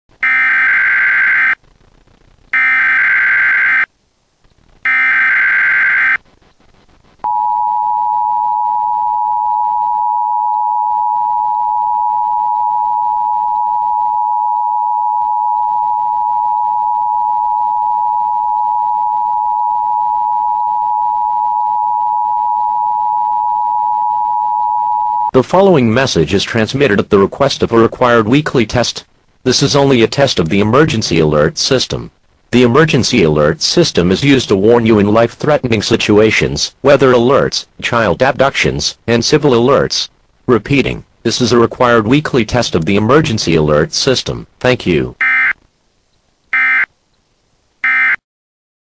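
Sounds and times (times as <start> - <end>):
steady two-tone attention signal: 7.3 - 25.3.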